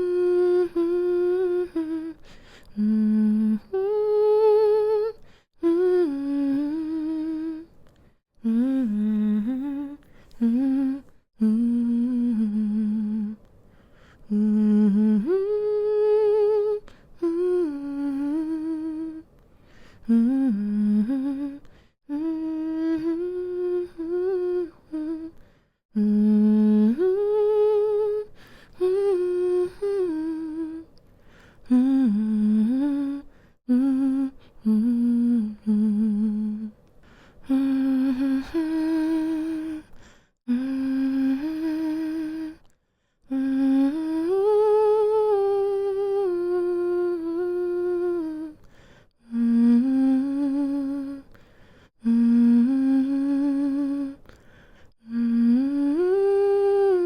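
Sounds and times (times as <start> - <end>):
woman humming a lullaby: 0.0 - 7.7, 8.4 - 13.4, 14.3 - 19.2, 20.1 - 25.4, 55.0 - 57.0.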